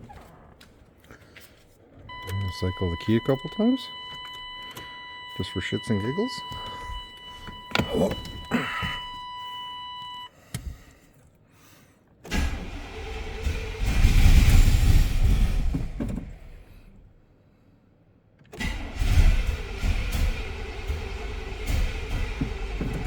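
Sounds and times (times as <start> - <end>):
truck engine cranking: 5.9 - 9.2, 12.2 - 16.7, 18.5 - 23.0.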